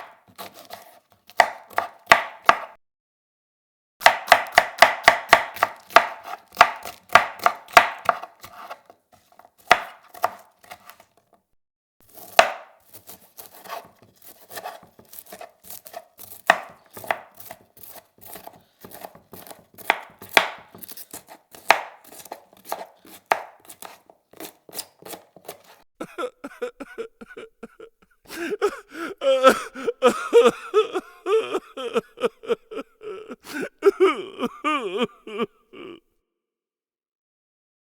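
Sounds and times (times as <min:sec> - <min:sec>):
knife chopping on cutting board: 0:00.0 - 0:02.8, 0:04.0 - 0:11.0, 0:12.1 - 0:25.8.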